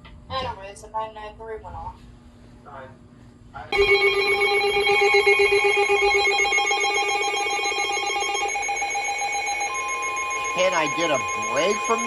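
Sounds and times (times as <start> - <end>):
harsh buzzing alarm tone: 3.8 - 12.0.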